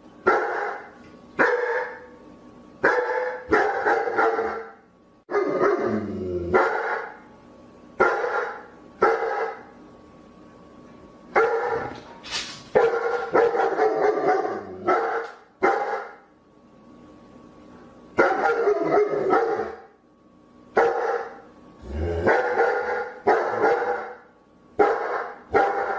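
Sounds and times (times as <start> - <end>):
dog barking: 0.2 - 2.1, 2.8 - 5.9, 6.5 - 7.2, 8.0 - 9.7, 11.4 - 12.0, 12.7 - 16.2, 18.2 - 19.9, 20.8 - 21.4, 22.3 - 25.9.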